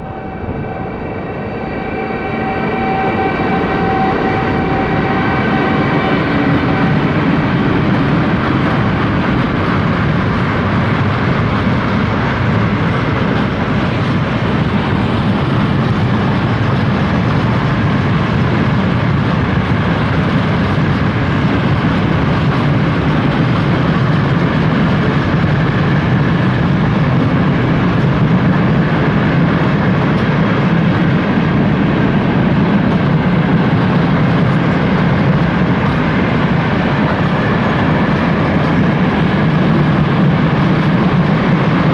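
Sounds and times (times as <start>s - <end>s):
train wheels running on rails: 0.0s - 41.9s.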